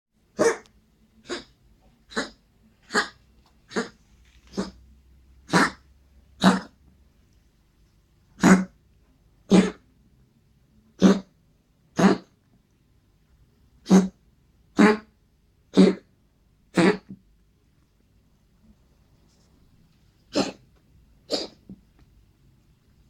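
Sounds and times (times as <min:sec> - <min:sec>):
pet coughing: 0:00.4 - 0:04.8, 0:05.4 - 0:05.8, 0:06.4 - 0:06.8, 0:08.4 - 0:08.8, 0:09.5 - 0:09.9, 0:11.0 - 0:11.4, 0:12.0 - 0:12.4, 0:13.8 - 0:14.2, 0:14.8 - 0:15.1, 0:15.7 - 0:16.1, 0:16.7 - 0:17.2, 0:20.3 - 0:21.8.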